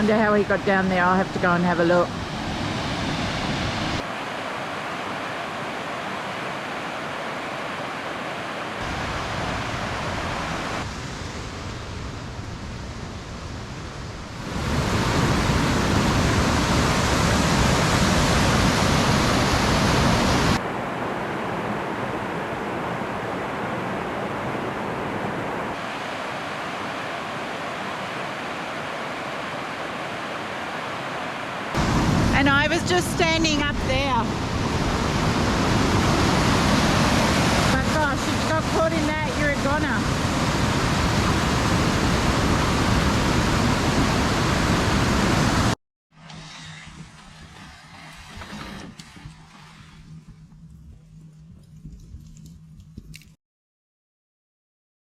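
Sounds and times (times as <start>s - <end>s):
water rushing over rocks: 14.4s - 25.1s, 34.3s - 45.8s.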